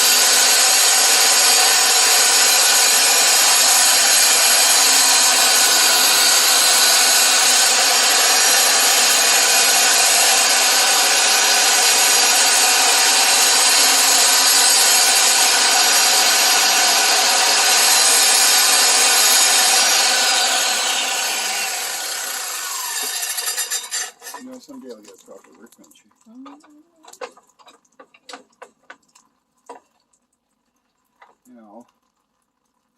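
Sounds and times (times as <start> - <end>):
power cutter grinding rock: 0.0 - 25.6.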